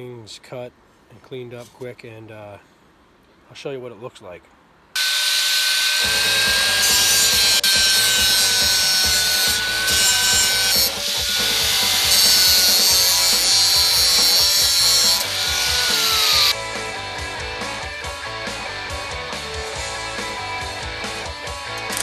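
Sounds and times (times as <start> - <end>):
angle grinder cutting steel: 5.0 - 16.6.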